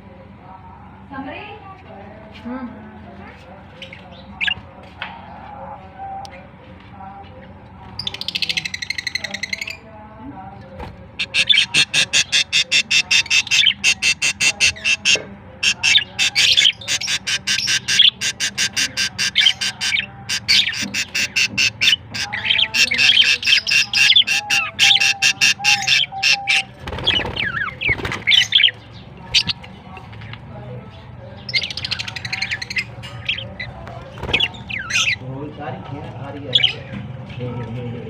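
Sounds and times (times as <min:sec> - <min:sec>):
harsh bird squawk: 0:11.2 - 0:28.7
budgerigars chirping: 0:11.2 - 0:29.6, 0:31.4 - 0:35.2, 0:36.4 - 0:36.9.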